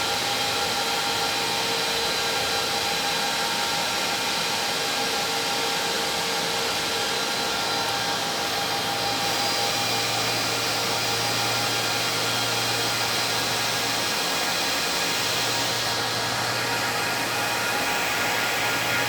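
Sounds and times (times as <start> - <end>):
cooling fans whirring: 7.4 - 19.0.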